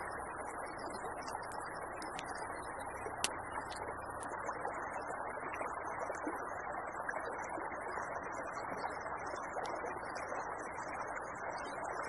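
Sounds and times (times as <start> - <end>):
campfire crackling and popping: 0.1 - 4.4.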